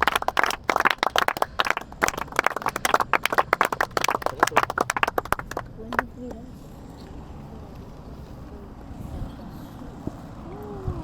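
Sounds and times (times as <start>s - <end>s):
people clapping: 0.0s - 6.4s.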